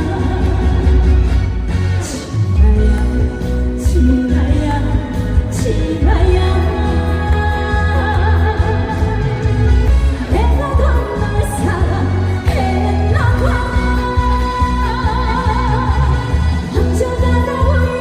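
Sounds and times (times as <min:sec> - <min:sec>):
woman singing: 0:00.0 - 0:18.0.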